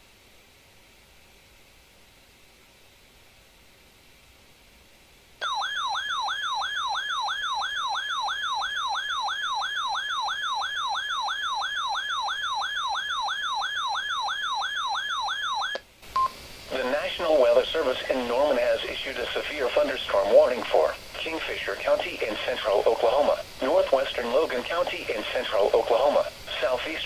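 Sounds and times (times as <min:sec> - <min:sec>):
warbling alert siren: 0:05.4 - 0:15.8.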